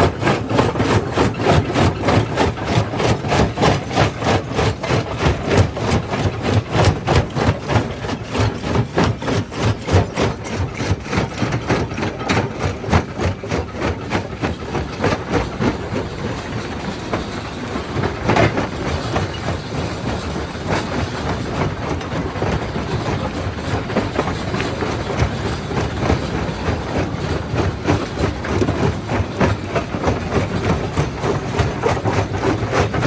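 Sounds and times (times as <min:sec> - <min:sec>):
jaw crusher crushing rock: 0:00.0 - 0:33.0.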